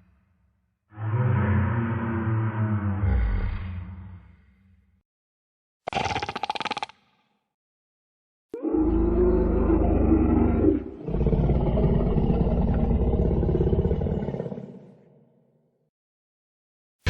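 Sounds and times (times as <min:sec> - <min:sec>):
deep dinosaur roars: 0:00.9 - 0:04.2, 0:08.6 - 0:15.2.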